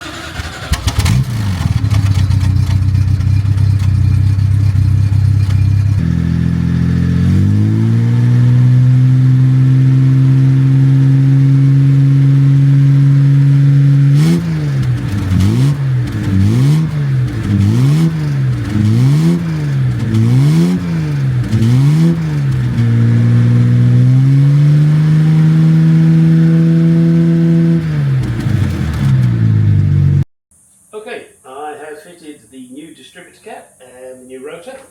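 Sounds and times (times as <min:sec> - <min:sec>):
car engine revving: 0:00.0 - 0:30.2.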